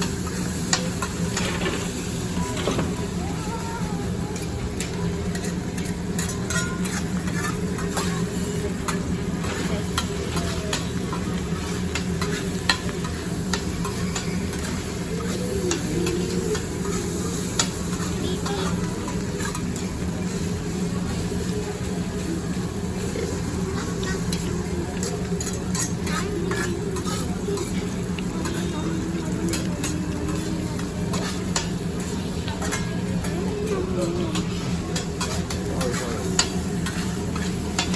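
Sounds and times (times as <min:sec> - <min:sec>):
faint background chatter: 0:00.0 - 0:37.9
food sizzling on a griddle: 0:00.0 - 0:37.9
low restaurant hum: 0:00.0 - 0:37.9
metal utensils scraping hot plate: 0:04.8 - 0:19.8, 0:23.7 - 0:28.7, 0:29.4 - 0:33.4, 0:34.3 - 0:37.9.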